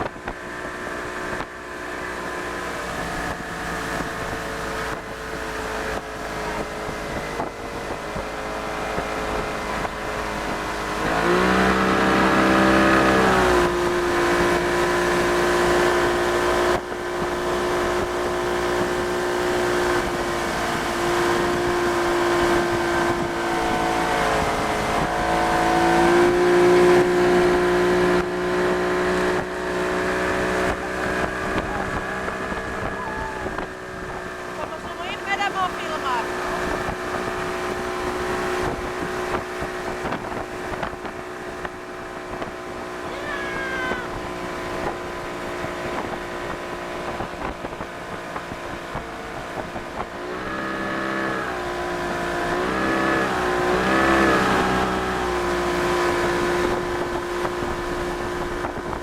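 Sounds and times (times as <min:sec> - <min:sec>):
outboard motor droning and revving: 0:00.0 - 0:59.0.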